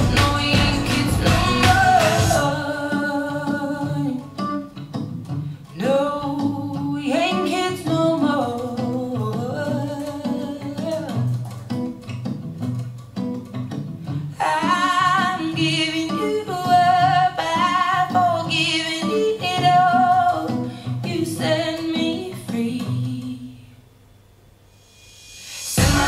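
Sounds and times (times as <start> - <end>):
person singing: 0.0 - 4.4, 5.8 - 11.3, 14.4 - 23.6, 25.4 - 26.0
plucked guitar: 0.0 - 23.9, 25.7 - 26.0.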